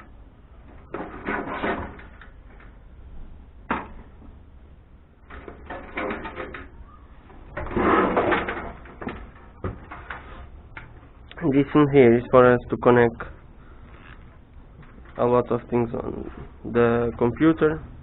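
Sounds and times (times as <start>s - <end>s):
metal computer case parts rattling: 0.7s - 2.8s, 5.2s - 11.0s.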